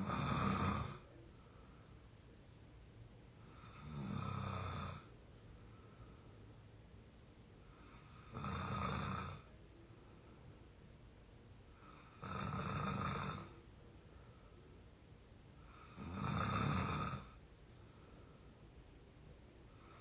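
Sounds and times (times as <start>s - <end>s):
person snoring: 0.0s - 1.1s, 3.5s - 5.1s, 7.8s - 9.5s, 11.8s - 13.6s, 15.7s - 17.4s
quiet breathing: 0.0s - 20.0s.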